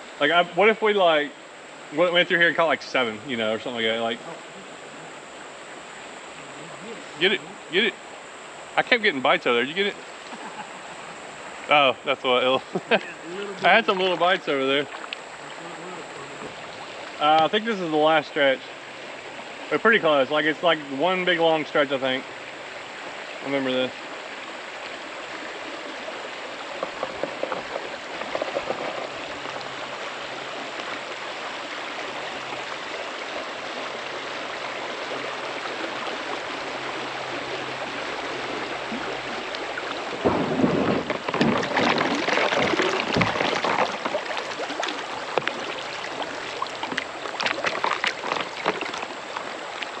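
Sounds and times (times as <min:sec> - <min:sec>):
creek water running: 0:00.0 - 0:50.0
knocks and low rumbles: 0:40.2 - 0:43.8.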